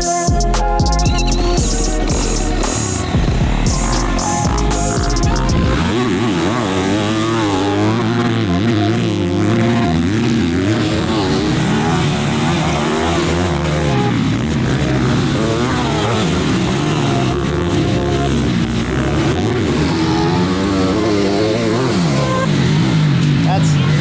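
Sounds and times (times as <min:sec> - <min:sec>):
motocross bike engine revving: 0:00.0 - 0:24.0.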